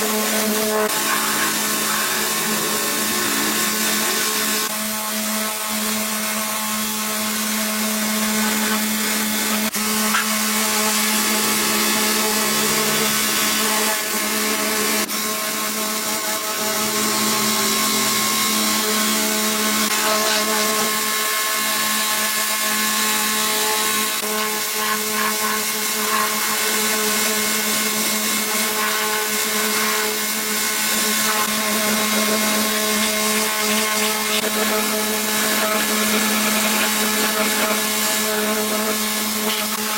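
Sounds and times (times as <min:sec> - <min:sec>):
electric power tool running: 0:00.0 - 0:39.9.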